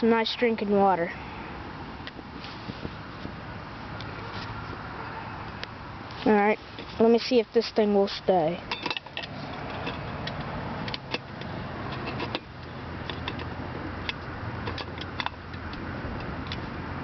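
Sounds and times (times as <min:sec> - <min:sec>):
highway traffic rumble: 0:00.0 - 0:17.0.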